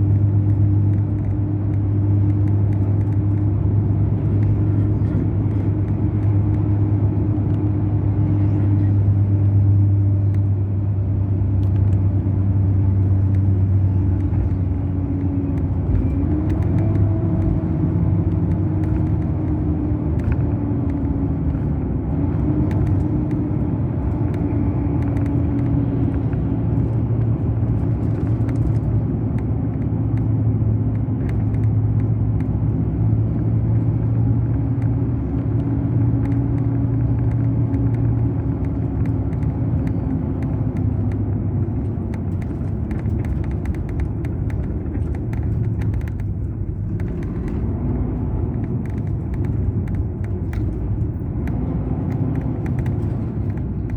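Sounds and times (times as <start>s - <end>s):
diesel engine droning: 0.0s - 53.9s.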